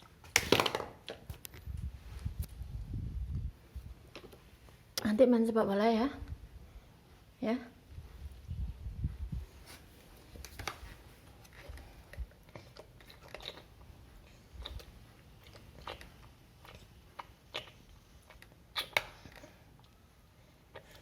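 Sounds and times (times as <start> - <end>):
toddler chewing and biting food: 11.2 - 21.0
mouth clicks: 14.6 - 19.5.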